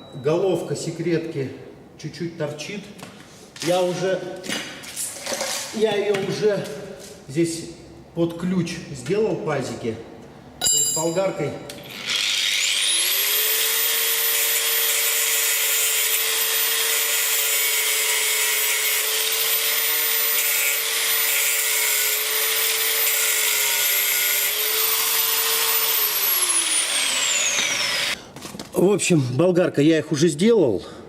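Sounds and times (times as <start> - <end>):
angle grinder grinding steel: 11.8 - 28.2.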